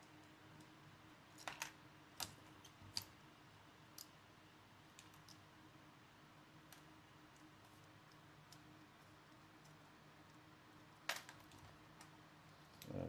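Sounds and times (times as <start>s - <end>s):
small parts clicking and tapping: 0.0s - 3.2s, 3.9s - 4.2s, 4.9s - 5.5s, 6.6s - 13.0s
faint steady hum: 0.0s - 13.0s.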